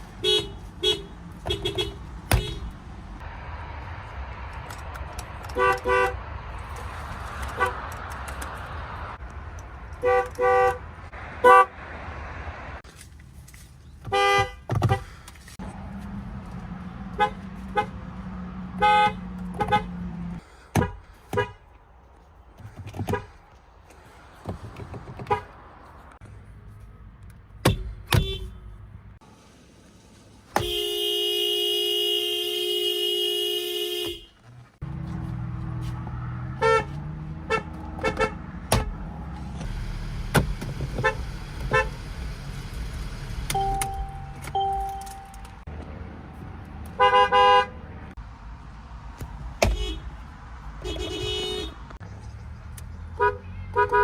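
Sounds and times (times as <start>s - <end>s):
car horns tooting: 0.1s - 2.7s, 5.5s - 6.3s, 10.0s - 11.8s, 14.0s - 15.2s, 17.2s - 18.0s, 18.7s - 20.0s, 27.7s - 28.6s, 30.5s - 34.4s, 36.5s - 39.0s, 40.9s - 42.0s, 43.5s - 45.7s, 47.0s - 47.8s, 49.6s - 50.2s, 50.8s - 52.0s, 53.1s - 54.0s
loud long car horn: 0.2s - 2.7s, 5.6s - 6.2s, 10.0s - 10.8s, 18.8s - 19.9s, 30.6s - 34.4s, 36.6s - 38.9s, 47.0s - 47.8s, 50.8s - 51.8s, 53.2s - 54.0s.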